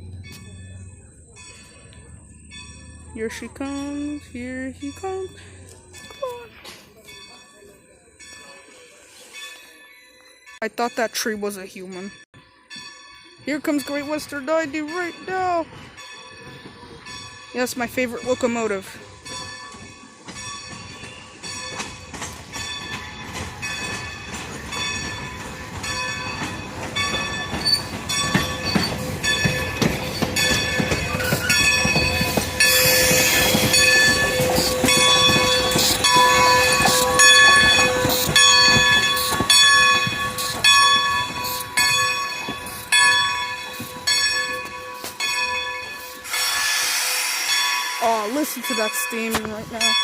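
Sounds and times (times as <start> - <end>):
train wheels clicking over rail joints: 12.8 - 50.0
high wheel squeal: 27.0 - 45.2, 45.9 - 48.2
steam hiss: 46.0 - 48.3.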